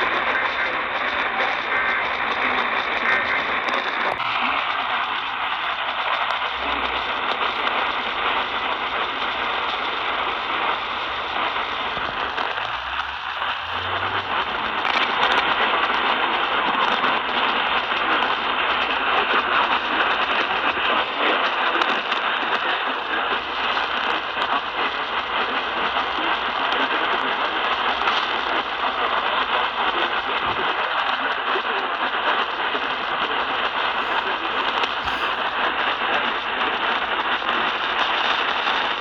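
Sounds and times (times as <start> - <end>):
radio static hiss: 4.1 - 39.0
faint steady tone: 4.2 - 16.4.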